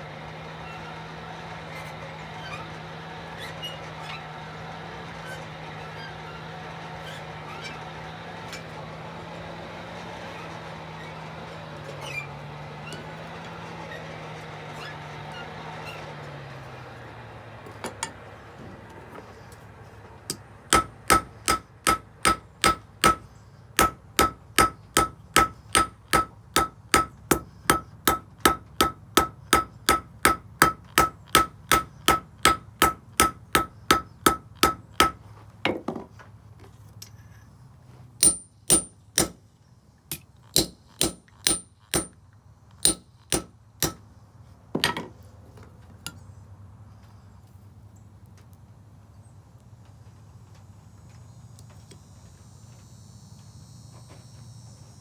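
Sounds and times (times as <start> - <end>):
hammer striking iron on anvil: 20.3 - 35.8, 38.2 - 39.4, 40.1 - 42.2, 42.8 - 44.0.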